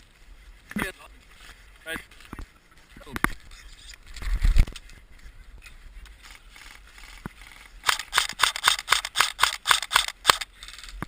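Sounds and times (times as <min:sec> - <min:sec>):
airsoft gun firing: 0:07.8 - 0:10.5.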